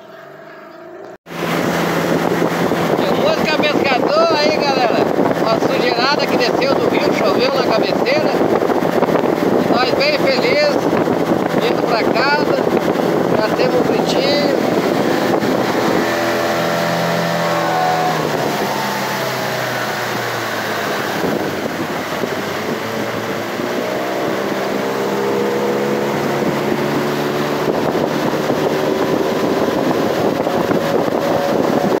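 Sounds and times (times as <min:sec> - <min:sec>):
outboard motor running: 0:00.0 - 0:32.0.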